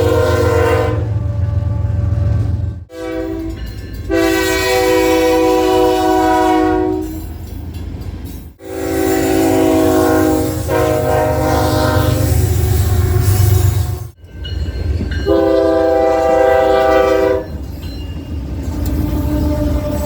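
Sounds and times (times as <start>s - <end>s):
locomotive air horn blasts: 0.0s - 7.2s, 8.6s - 14.1s, 15.2s - 17.6s, 18.8s - 20.0s
train rumbling: 0.0s - 20.0s.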